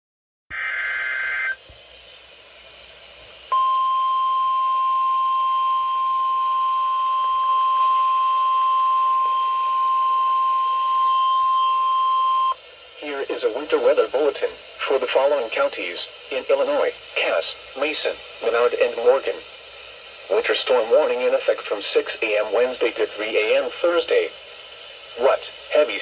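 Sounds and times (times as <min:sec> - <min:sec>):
loud high alarm beep: 0:00.5 - 0:01.6, 0:03.5 - 0:12.6
warbling data tones: 0:00.5 - 0:01.6
radio hiss: 0:00.5 - 0:26.0.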